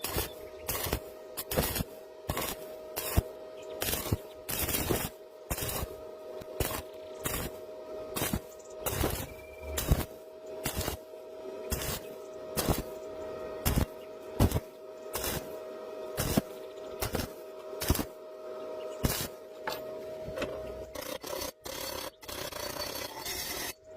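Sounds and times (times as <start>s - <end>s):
faint steady tone: 7.0s - 10.3s.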